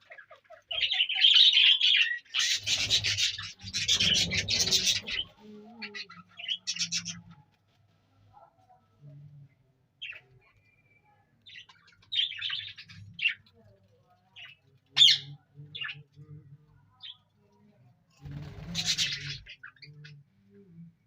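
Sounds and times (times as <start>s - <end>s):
budgerigars chirping: 0.0s - 5.4s, 18.6s - 19.9s.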